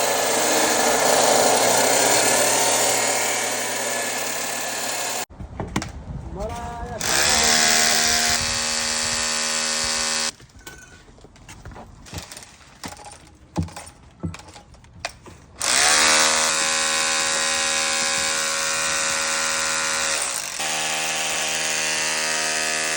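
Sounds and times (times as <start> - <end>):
power tool motor whining: 0.0 - 5.3, 7.0 - 10.3, 15.6 - 22.9.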